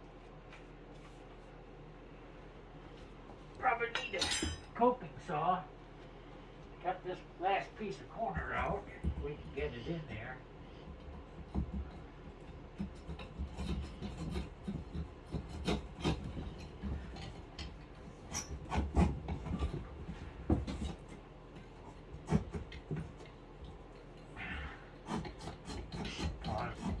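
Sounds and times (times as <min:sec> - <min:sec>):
hand saw scraping wood: 0:10.8 - 0:23.3, 0:24.4 - 0:27.0.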